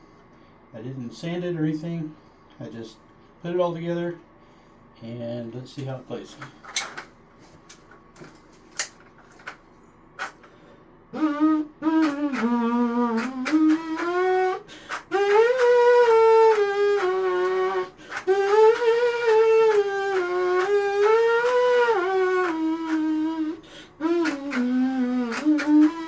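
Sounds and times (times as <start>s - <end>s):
plastic trumpet playing notes: 11.1s - 26.0s.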